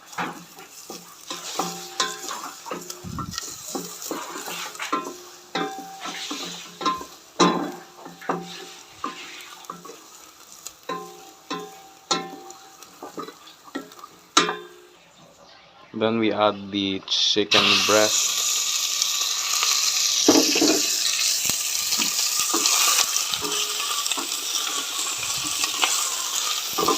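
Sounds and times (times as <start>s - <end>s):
garlic sizzling in oil: 0.0s - 15.0s, 17.5s - 26.9s
utensil knocking and scraping pan: 0.1s - 10.0s, 20.3s - 21.0s.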